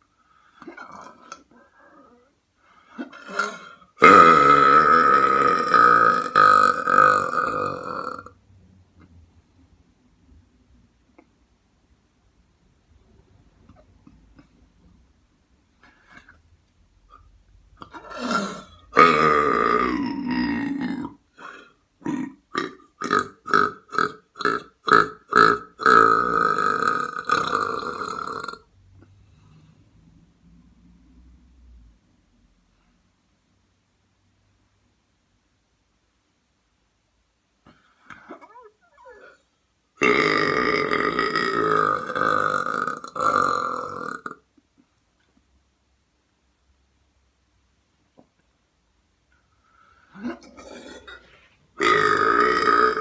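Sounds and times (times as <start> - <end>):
person belching: 0.6 - 2.2, 3.0 - 8.4, 17.8 - 28.7, 40.0 - 44.5, 50.2 - 53.0
person burping: 0.6 - 2.2, 2.9 - 8.4, 17.1 - 28.7, 37.7 - 39.4, 40.0 - 44.6, 50.0 - 53.0.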